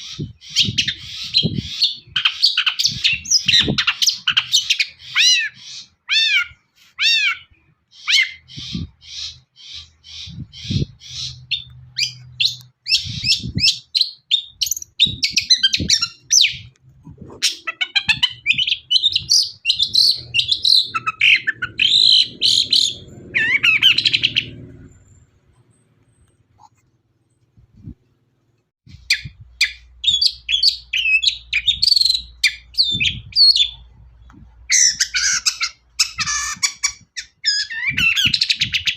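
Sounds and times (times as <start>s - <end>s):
shrike singing fast varied song: 17.7s - 24.9s.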